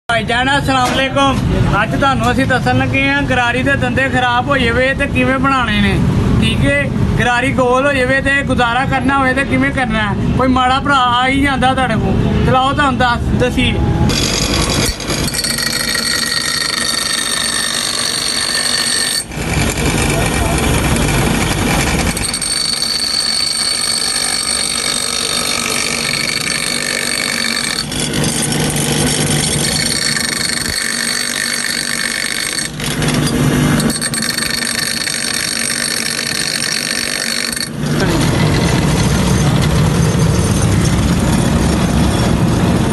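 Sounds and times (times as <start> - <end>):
workshop machine whining: 13.0 - 42.9.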